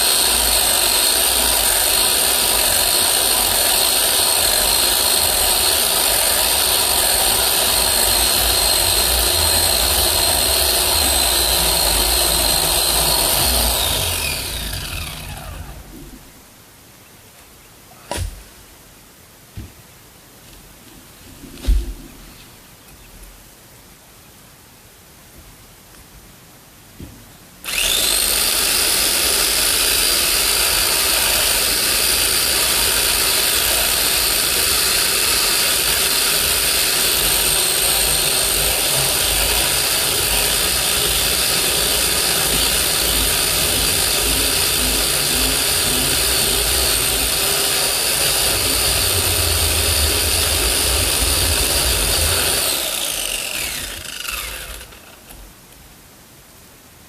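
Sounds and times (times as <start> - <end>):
electric chainsaw cutting wood: 0.0 - 16.4, 27.6 - 55.4.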